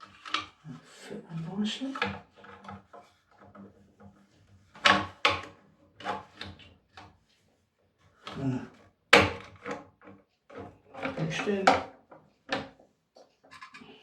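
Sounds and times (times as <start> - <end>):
knocks and clatters of parts: 9.2 - 14.0.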